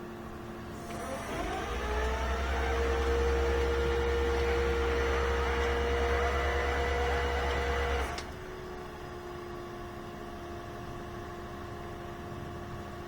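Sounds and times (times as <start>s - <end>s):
low engine drone: 0.0s - 13.0s
hydraulic whine: 0.6s - 9.6s.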